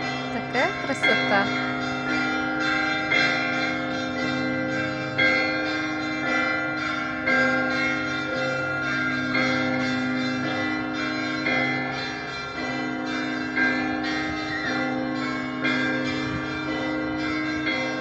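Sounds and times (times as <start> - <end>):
church bells ringing: 0.0 - 18.0.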